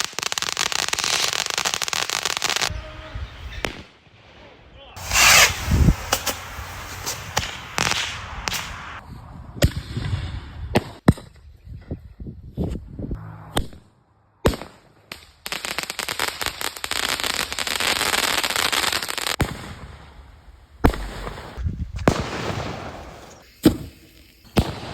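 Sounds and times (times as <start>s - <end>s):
fireworks crackling: 0.0s - 3.9s, 5.0s - 9.0s, 14.4s - 24.9s
fireworks bangs: 0.0s - 9.0s, 14.4s - 24.9s.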